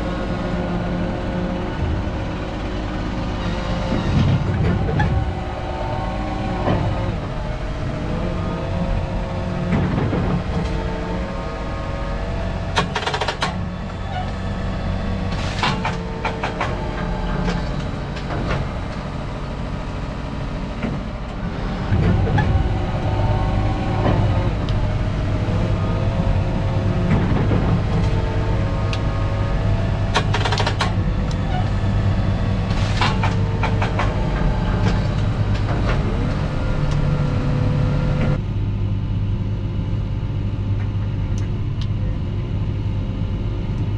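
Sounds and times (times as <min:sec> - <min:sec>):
tractor engine running: 0:00.0 - 0:43.9
sharp knocks and rattles: 0:12.2 - 0:19.2, 0:29.6 - 0:36.4.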